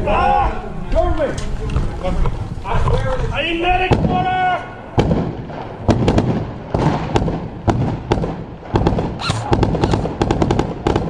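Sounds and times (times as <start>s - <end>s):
airsoft gun shots: 5.0s - 11.0s.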